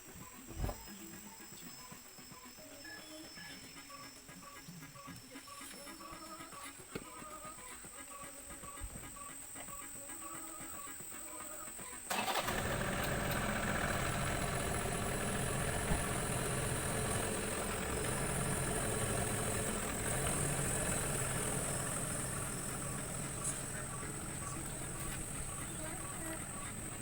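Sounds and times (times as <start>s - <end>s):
engine running steadily: 12.1s - 27.0s.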